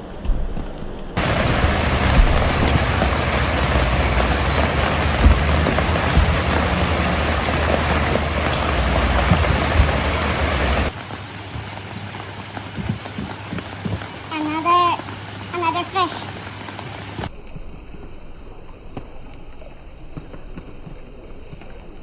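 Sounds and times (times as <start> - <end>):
low rumble: 0.0 - 11.0
steady rain: 1.2 - 22.0.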